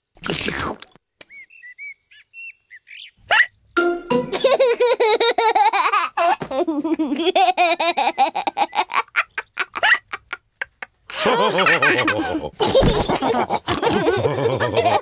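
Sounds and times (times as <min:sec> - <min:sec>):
cartoon pigs laughing: 0:04.3 - 0:15.0.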